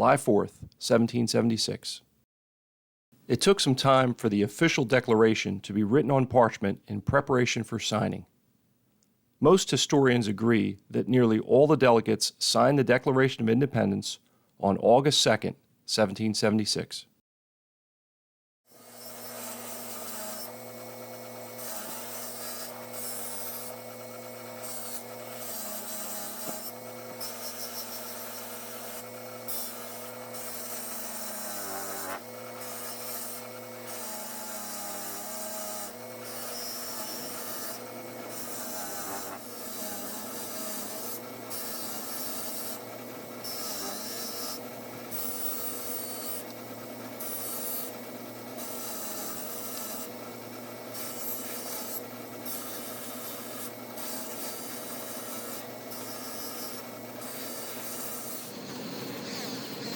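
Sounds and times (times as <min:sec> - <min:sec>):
tool motor hum: 0:18.7 - 0:59.9.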